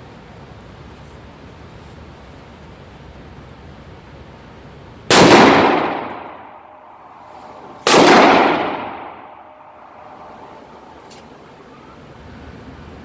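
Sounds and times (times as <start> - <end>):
rifle shots echoing: 5.1 - 6.9, 7.7 - 10.2.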